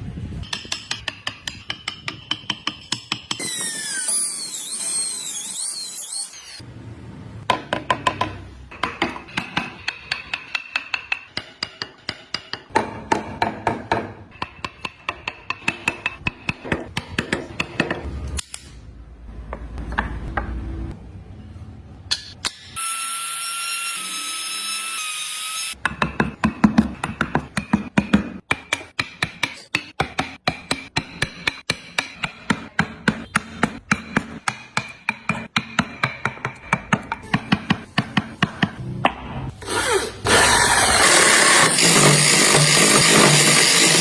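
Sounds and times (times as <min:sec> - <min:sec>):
high squealing scraping: 0:03.4 - 0:06.6.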